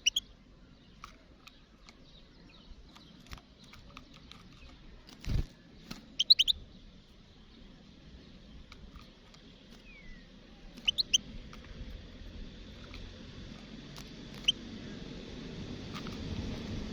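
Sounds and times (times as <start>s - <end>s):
bird high chirping calls: 0.0s - 1.0s, 6.0s - 6.6s, 9.8s - 11.3s, 14.4s - 14.6s.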